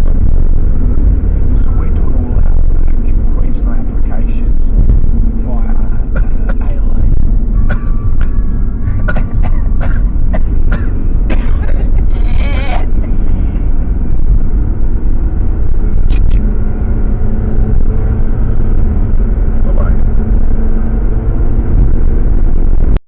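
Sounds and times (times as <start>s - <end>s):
moving car rumble: 0.0s - 23.0s
person coughing: 6.1s - 6.8s, 7.6s - 12.9s.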